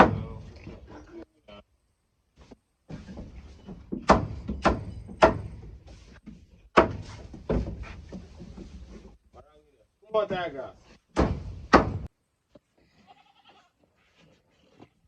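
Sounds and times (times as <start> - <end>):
hard thuds: 2.8 - 9.2, 10.3 - 12.1.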